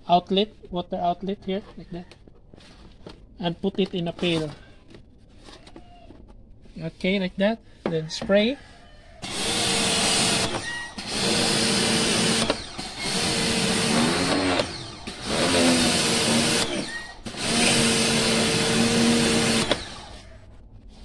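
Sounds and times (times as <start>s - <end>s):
pressure washer motor hum: 9.2s - 20.2s.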